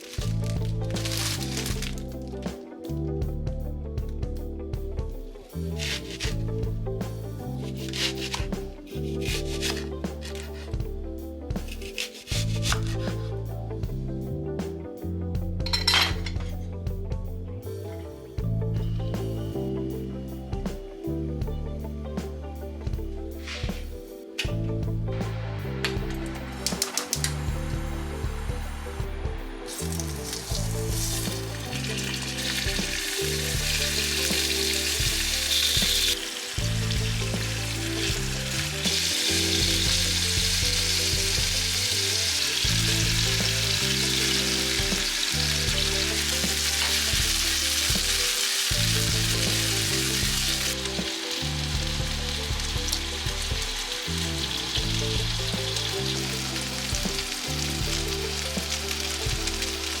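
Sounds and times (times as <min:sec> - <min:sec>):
soft background music: 0:00.0 - 1:00.0
food sizzling in a pan: 0:29.7 - 1:00.0.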